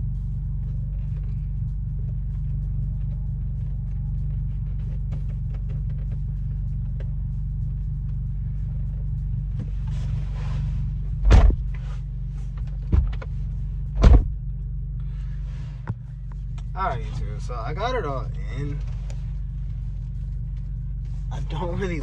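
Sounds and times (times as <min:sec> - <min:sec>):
car engine idling: 0:00.0 - 0:22.0
loud thumps: 0:11.1 - 0:11.8, 0:12.8 - 0:13.3, 0:13.9 - 0:14.5.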